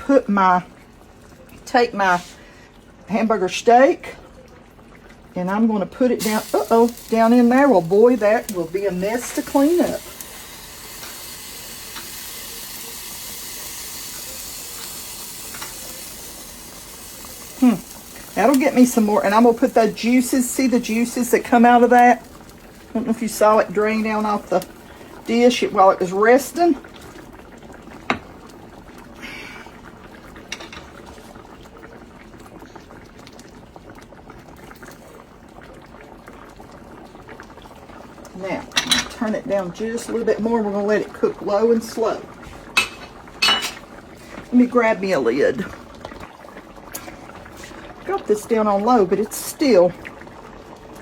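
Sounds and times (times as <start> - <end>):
gravy bubbling in a skillet: 0.0 - 51.0
meat sizzling in a skillet: 6.2 - 28.4.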